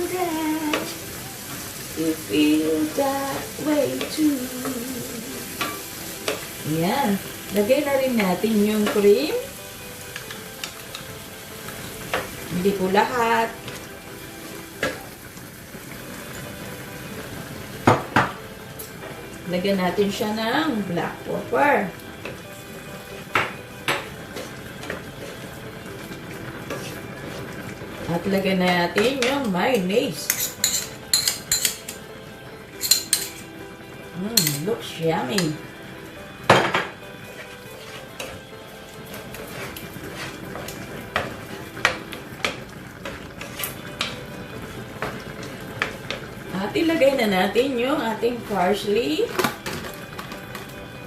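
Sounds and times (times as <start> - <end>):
utensil stirring and scraping pan: 20.7 - 32.1, 32.7 - 33.5, 34.2 - 35.7, 37.1 - 47.1
utensil clinking against pan: 30.3 - 32.0, 32.8 - 33.4, 34.4 - 34.7.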